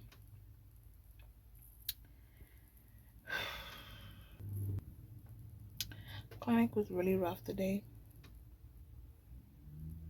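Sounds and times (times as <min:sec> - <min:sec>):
woman sighing: 0:03.2 - 0:04.2
short low hum: 0:04.4 - 0:05.1.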